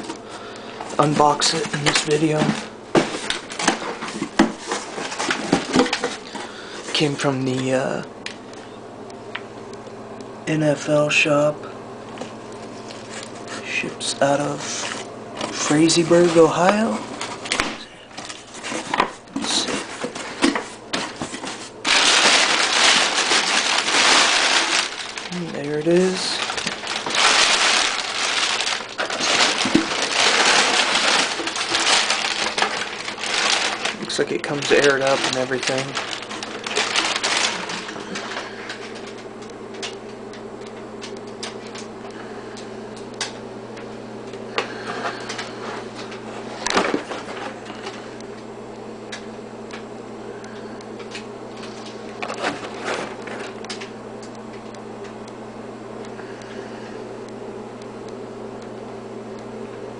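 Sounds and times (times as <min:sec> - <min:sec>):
steady low hum: 0:00.0 - 0:59.9
packaging rustling and tearing: 0:00.8 - 0:07.0, 0:14.6 - 0:39.3, 0:51.6 - 0:53.8.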